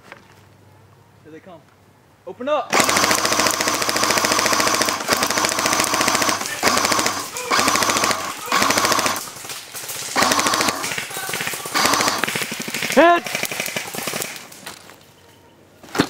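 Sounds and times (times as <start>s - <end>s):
airsoft guns firing full auto: 2.7s - 14.8s.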